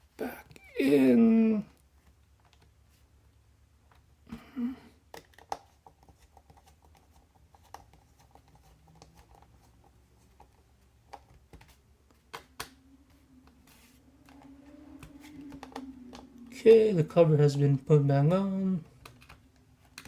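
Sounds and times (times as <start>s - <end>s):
faint low hum: 5.7s - 20.0s.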